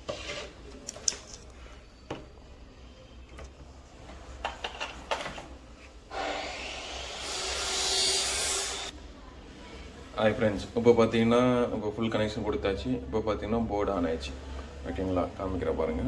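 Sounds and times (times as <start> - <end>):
clicks and knocks of handling wires: 0.7 - 2.3.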